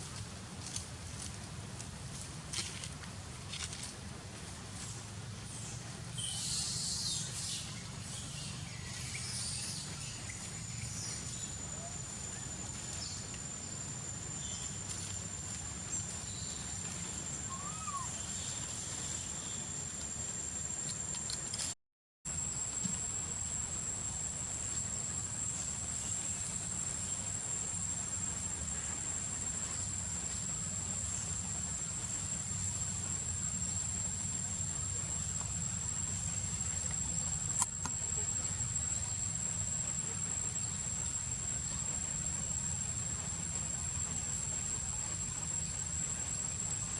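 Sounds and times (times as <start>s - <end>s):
insects calling: 4.8s - 21.7s, 22.3s - 46.9s
faint chirps: 5.4s - 20.9s
high-pitched insect drone: 5.5s - 21.1s
rising-and-falling call: 17.4s - 18.4s.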